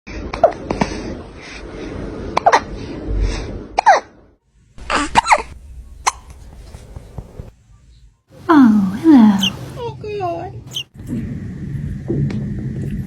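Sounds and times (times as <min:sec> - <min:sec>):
person hiccuping: 0:08.5 - 0:09.6.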